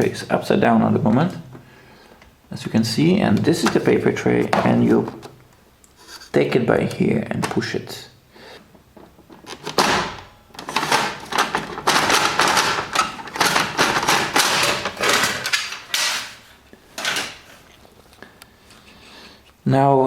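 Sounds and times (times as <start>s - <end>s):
plastic printer tray knocking: 3.6s - 5.4s, 9.0s - 15.8s.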